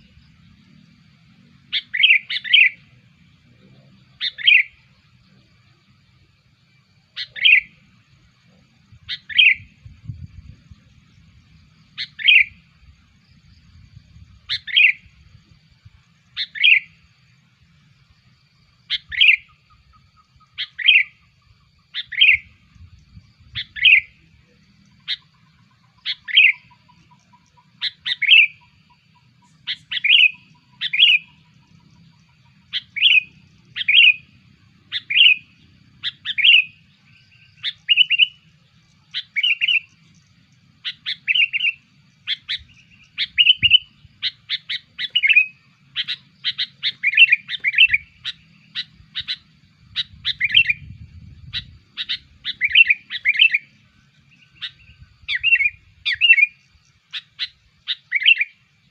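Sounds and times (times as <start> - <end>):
bird lure call: 1.7 - 3.0, 4.1 - 4.9, 7.1 - 7.9, 9.0 - 9.8, 11.9 - 12.6, 14.5 - 15.2, 16.3 - 17.0, 18.9 - 22.6, 23.5 - 58.9.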